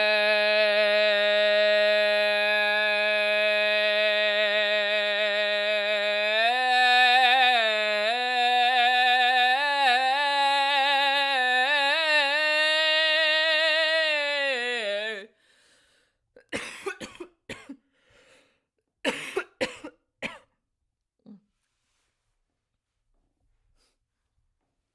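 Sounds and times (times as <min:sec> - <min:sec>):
person singing solo: 0:00.0 - 0:15.3.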